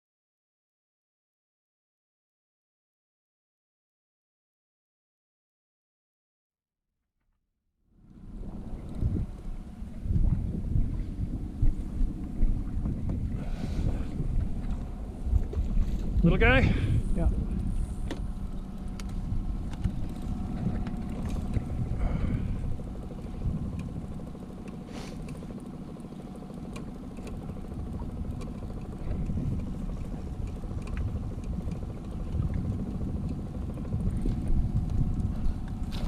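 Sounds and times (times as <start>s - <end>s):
boat motor droning: 7.8s - 36.0s
water noise: 8.0s - 36.0s
wind noise: 8.2s - 24.3s, 27.6s - 36.0s.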